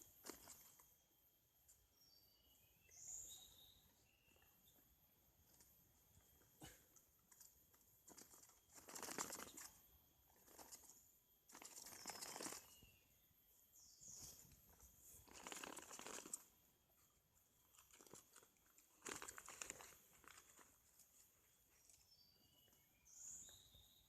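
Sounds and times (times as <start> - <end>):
faint rustling and crunching: 4.0 - 12.8, 14.2 - 22.9.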